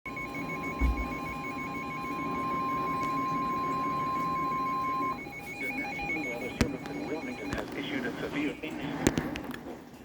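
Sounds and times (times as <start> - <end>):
steady alarm tone: 0.1 - 8.6
radio receiver hum and hiss: 5.0 - 9.6.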